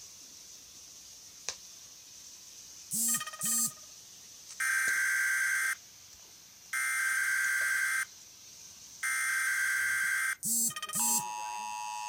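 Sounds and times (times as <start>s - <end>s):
digital data bursts: 2.9s - 3.8s, 9.0s - 12.0s.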